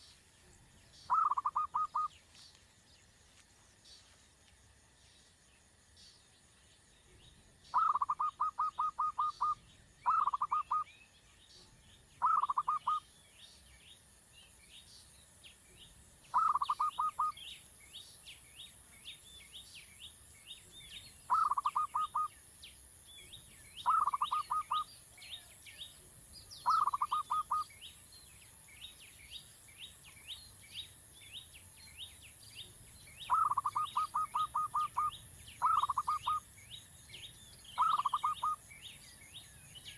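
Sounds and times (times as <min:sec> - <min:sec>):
coucal chick rattling calls: 0:01.1 - 0:02.1, 0:07.7 - 0:10.9, 0:12.2 - 0:13.1, 0:16.3 - 0:17.4, 0:21.3 - 0:22.3, 0:23.8 - 0:24.9, 0:26.6 - 0:27.7, 0:33.3 - 0:36.4, 0:37.8 - 0:38.6.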